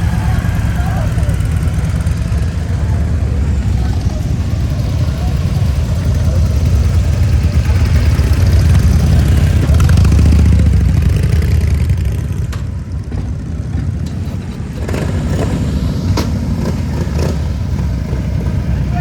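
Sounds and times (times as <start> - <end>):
motorcycle engine running loud: 0.0 - 19.0.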